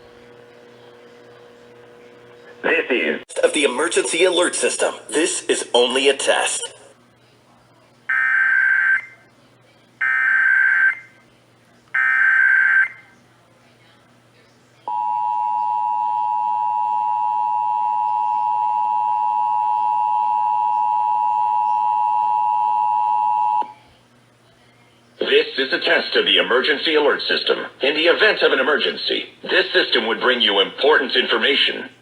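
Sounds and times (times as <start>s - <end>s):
two-tone attention signal: 14.9s - 23.8s.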